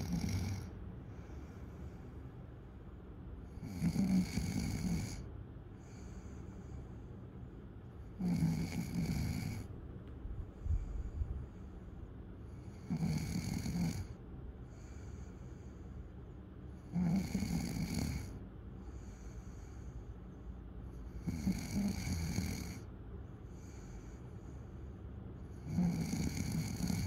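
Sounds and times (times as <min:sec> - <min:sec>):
person snoring: 0:00.0 - 0:01.6, 0:03.6 - 0:05.3, 0:08.2 - 0:09.7, 0:12.6 - 0:14.2, 0:16.8 - 0:18.4, 0:21.2 - 0:22.8, 0:25.6 - 0:27.0
quiet breathing: 0:00.0 - 0:27.0.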